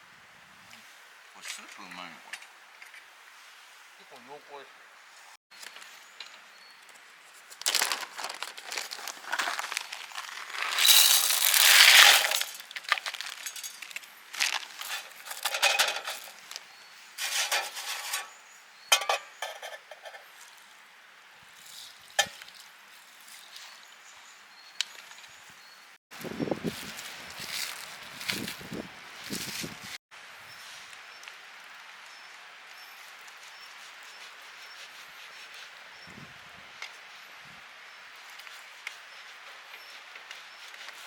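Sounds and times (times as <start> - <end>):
packaging rustling and crinkling: 7.5 - 16.6, 26.7 - 28.7.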